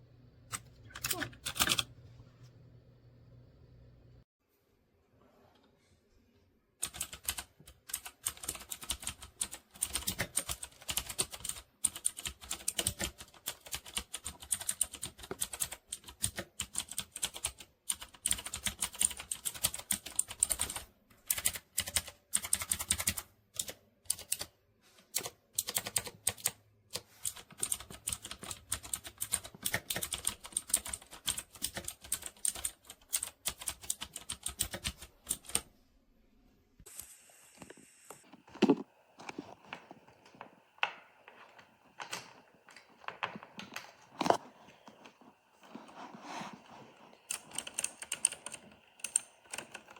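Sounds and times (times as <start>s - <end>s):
fast typing on mechanical keyboard: 6.8s - 24.5s, 25.1s - 35.6s, 47.3s - 49.9s.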